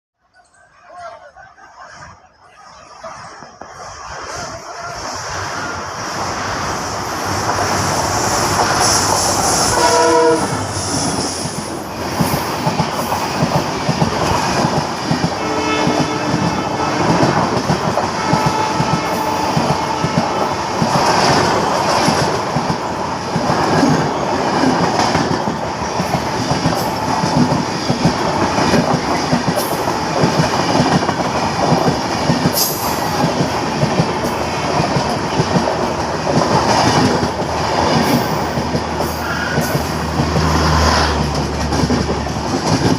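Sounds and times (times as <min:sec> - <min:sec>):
locomotive horn: 0:09.4 - 0:10.9, 0:15.4 - 0:17.4, 0:18.0 - 0:20.6
train wheels clattering over rail joints: 0:10.6 - 0:42.9.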